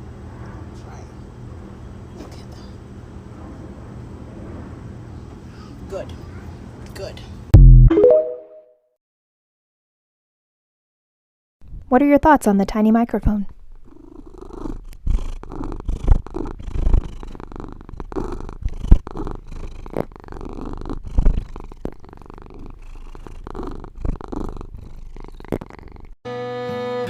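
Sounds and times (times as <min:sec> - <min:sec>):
cat purring: 0:13.6 - 0:26.2.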